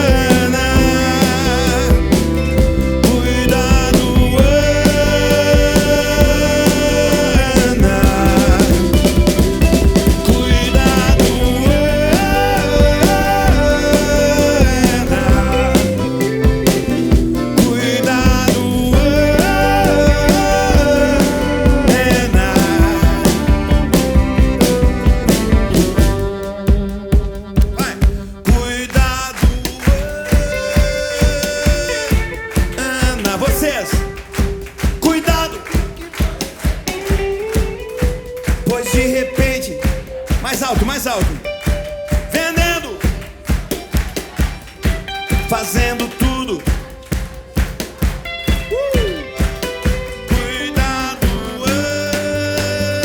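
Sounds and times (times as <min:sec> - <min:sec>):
lead melody line: 0:00.0 - 0:29.3, 0:47.4 - 0:53.0
drum hits: 0:00.0 - 0:53.0
rock band playing live: 0:00.0 - 0:53.0.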